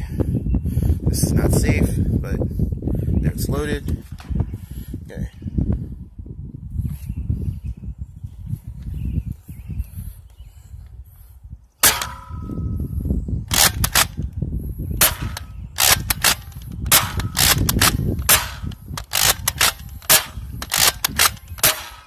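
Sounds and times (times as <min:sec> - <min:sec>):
wind rumble on microphone: 0:00.0 - 0:22.0
toy blaster pumping and firing: 0:13.5 - 0:14.2, 0:15.0 - 0:22.0.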